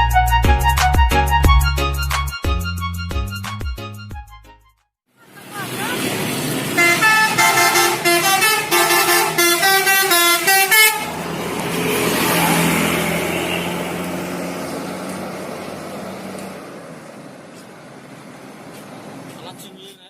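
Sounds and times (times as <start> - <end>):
bus engine drone: 5.1 - 20.0
multi-tone musical bus horn: 6.7 - 11.2, 13.0 - 14.0.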